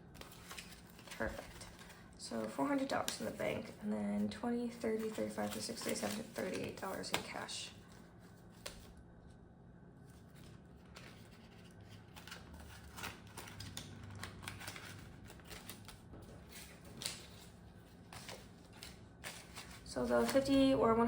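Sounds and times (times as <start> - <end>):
banknotes rustling: 0.1 - 8.8, 10.2 - 21.0.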